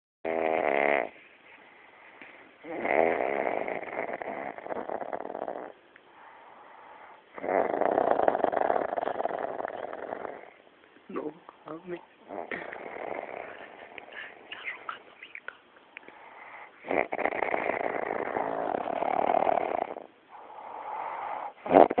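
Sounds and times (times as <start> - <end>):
man snoring: 0.3 - 1.1, 2.6 - 5.7, 7.4 - 10.5, 12.3 - 14.4, 16.6 - 22.0
quiet breathing: 1.1 - 2.7, 5.9 - 7.4, 11.5 - 17.2, 17.8 - 21.6.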